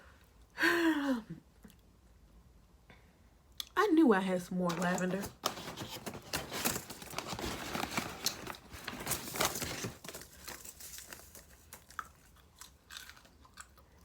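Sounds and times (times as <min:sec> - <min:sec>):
crinkling: 0:04.6 - 0:13.9
crunchy chewing: 0:06.9 - 0:14.0.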